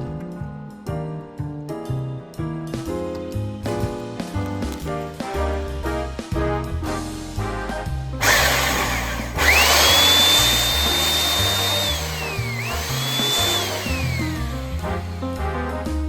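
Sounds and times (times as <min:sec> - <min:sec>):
background music: 0:00.0 - 0:16.0
drill grinding into wood: 0:08.2 - 0:15.2
electric drill whining: 0:08.2 - 0:15.2.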